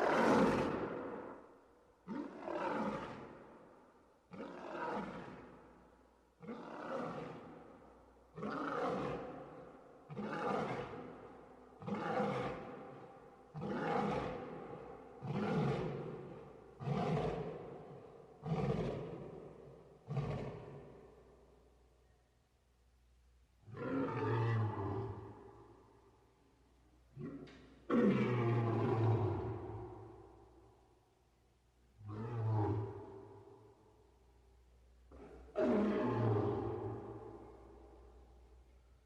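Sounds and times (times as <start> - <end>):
lion roaring: 8.4 - 9.4, 11.8 - 12.8, 23.7 - 25.4, 35.1 - 37.6.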